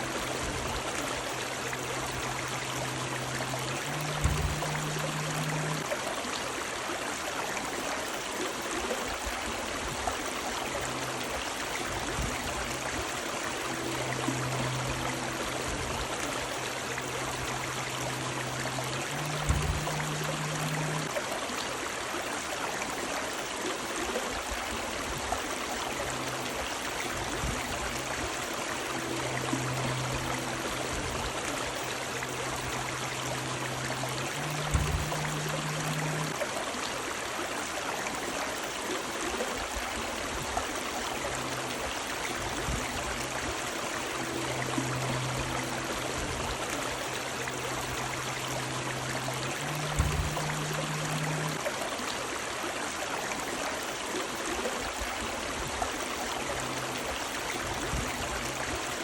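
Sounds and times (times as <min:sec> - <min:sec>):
faint low hum: 0:00.0 - 0:06.0, 0:10.1 - 0:21.2, 0:25.5 - 0:36.4, 0:40.1 - 0:51.7
river water rushing: 0:00.0 - 0:59.0.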